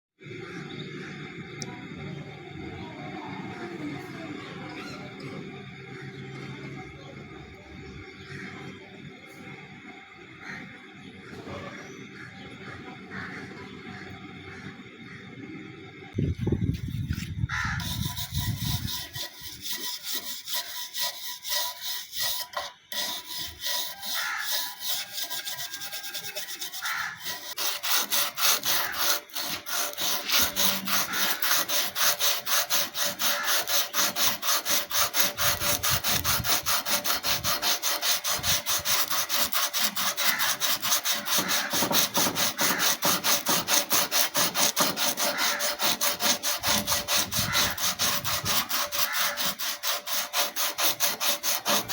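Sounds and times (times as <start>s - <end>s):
scraping rust off knife blade: 16.8s - 51.9s.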